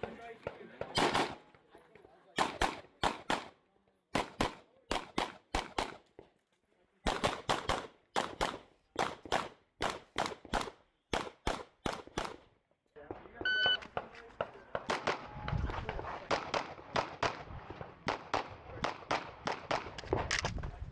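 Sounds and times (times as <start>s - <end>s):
pistol shots: 0.0s - 1.4s, 2.4s - 6.1s, 7.0s - 12.5s.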